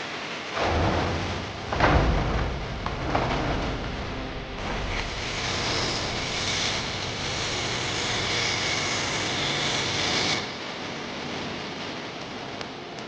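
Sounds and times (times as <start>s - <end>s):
steady rushing hiss: 0.0s - 10.2s.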